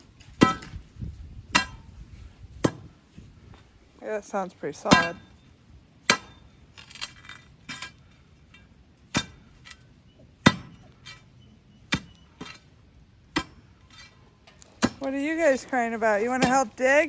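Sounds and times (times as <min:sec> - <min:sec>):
metal tool striking rock: 0:00.4 - 0:00.8, 0:01.5 - 0:01.9, 0:02.6 - 0:02.9, 0:04.9 - 0:05.4, 0:06.0 - 0:08.0, 0:09.1 - 0:09.8, 0:10.4 - 0:11.2, 0:11.9 - 0:12.6, 0:13.3 - 0:16.8.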